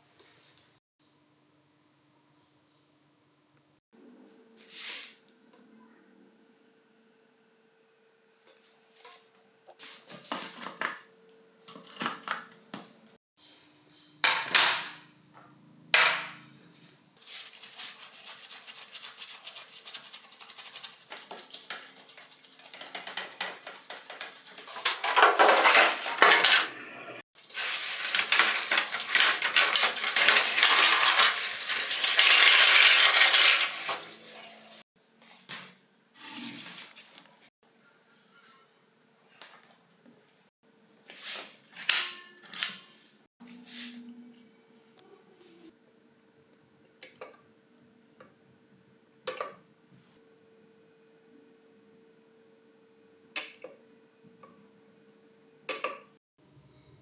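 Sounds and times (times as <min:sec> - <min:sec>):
scrubbing on metal: 0:17.2 - 0:34.8.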